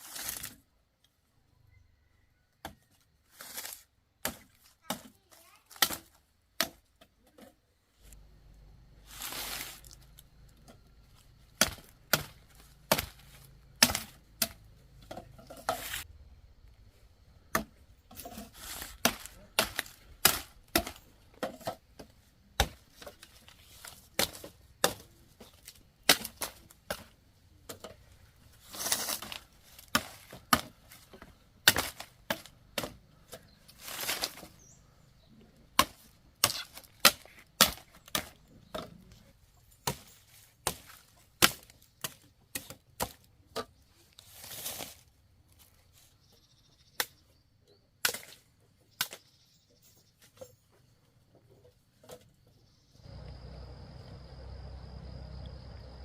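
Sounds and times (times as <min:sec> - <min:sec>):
blade chopping: 0:11.6 - 0:14.6.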